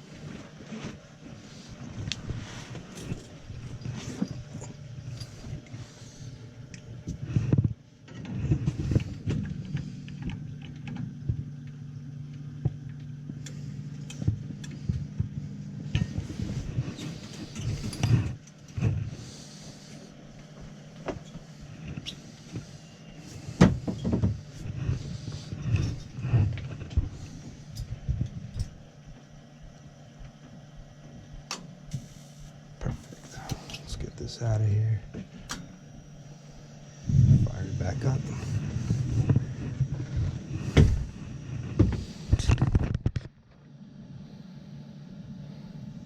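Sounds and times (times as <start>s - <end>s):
steady low hum: 0.0s - 46.0s.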